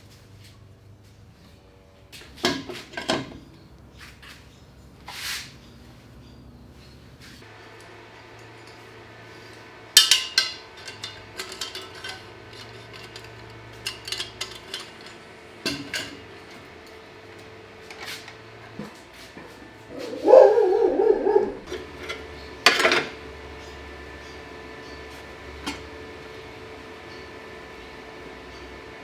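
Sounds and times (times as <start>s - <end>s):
metal tools clinking: 10.0s - 16.2s.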